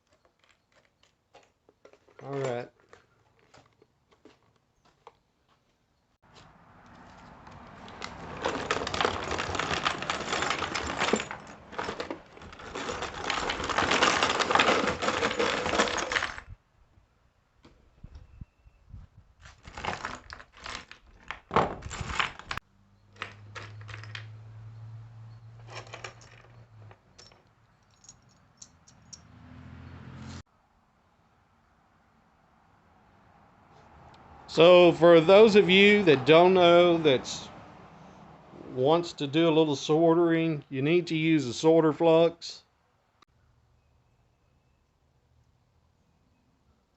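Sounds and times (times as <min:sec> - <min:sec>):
wire connector ends jingling clatter: 0:08.0 - 0:16.5
small pieces clicking: 0:08.1 - 0:16.5.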